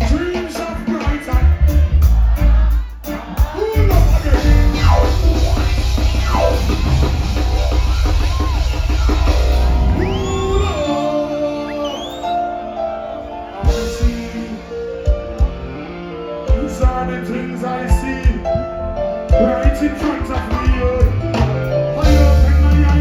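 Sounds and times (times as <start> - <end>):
heavy bass and drums: 0.0 - 11.0, 19.3 - 23.0
live reggae band playing: 0.0 - 23.0
sliding instrumental notes: 1.7 - 23.0.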